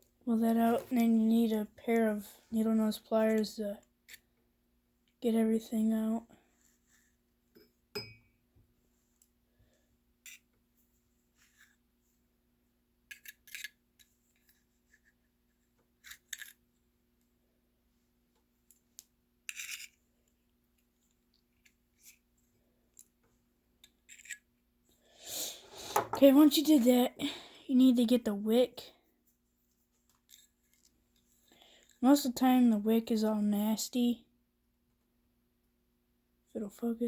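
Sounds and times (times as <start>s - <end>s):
pliers clicking and scraping metal: 10.3s - 10.5s, 13.1s - 13.8s, 19.5s - 20.0s, 23.8s - 24.5s.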